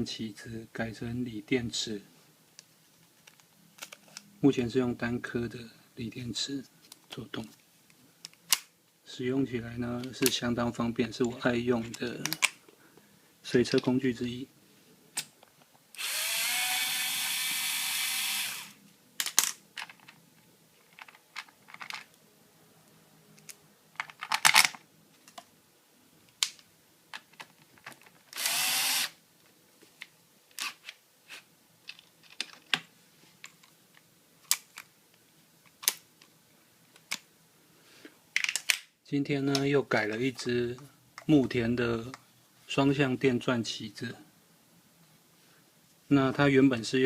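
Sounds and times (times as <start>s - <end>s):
electric screwdriver spinning: 16.0s - 18.8s, 28.4s - 29.2s
tool handling clicks and knocks: 20.8s - 22.2s.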